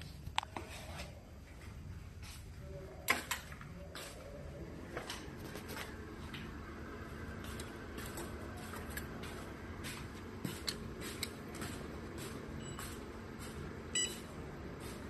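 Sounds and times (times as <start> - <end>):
machine hum: 3.8 - 15.0.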